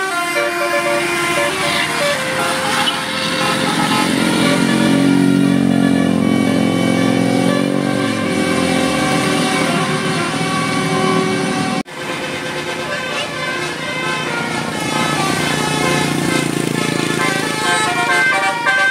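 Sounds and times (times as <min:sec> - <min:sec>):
bus engine accelerating past: 0:00.8 - 0:18.9.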